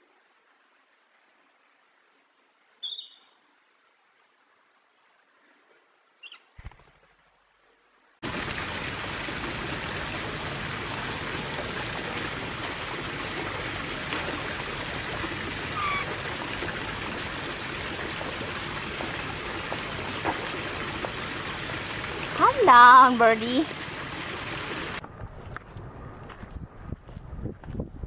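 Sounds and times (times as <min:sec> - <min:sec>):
running water rushing: 0:08.2 - 0:25.0
short bird call: 0:15.7 - 0:16.2.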